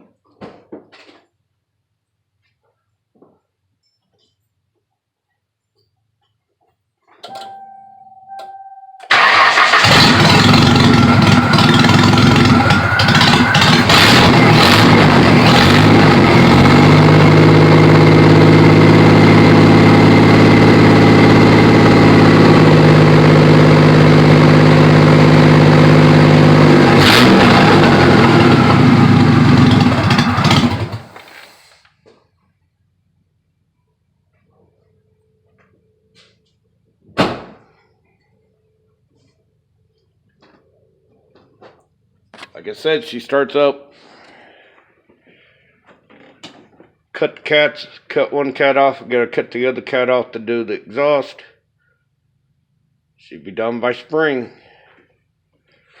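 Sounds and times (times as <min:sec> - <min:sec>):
faint steady tone: 0:07.3 - 0:09.1
car engine running loud: 0:09.1 - 0:31.3.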